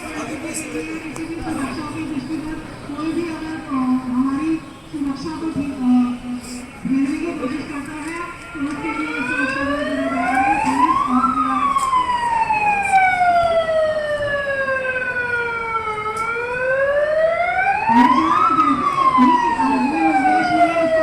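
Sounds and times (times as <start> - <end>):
emergency siren wailing: 8.3 - 21.0.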